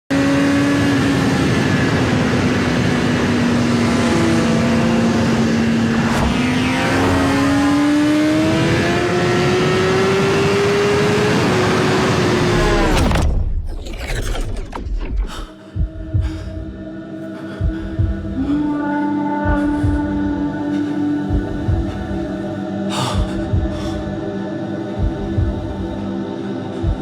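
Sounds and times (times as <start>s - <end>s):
engine whine accelerating: 0.1s - 15.5s.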